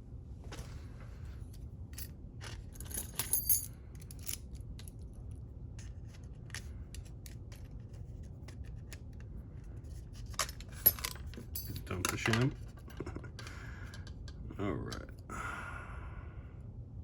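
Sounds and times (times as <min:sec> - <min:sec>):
metallic jingle and clink: 0:02.8 - 0:04.4, 0:10.8 - 0:12.2.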